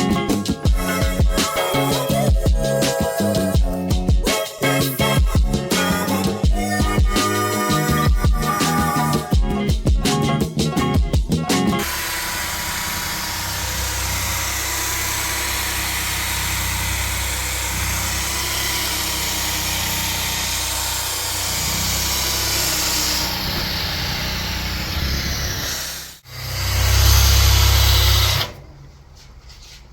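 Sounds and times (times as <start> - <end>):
power tool whirring: 11.8 - 28.6.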